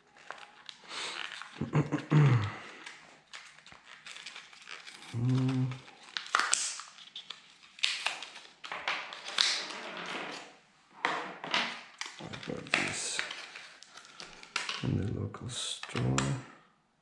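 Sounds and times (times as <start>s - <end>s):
plastic parts clicking and rustling: 0.0s - 1.6s, 2.7s - 9.8s, 11.5s - 14.9s.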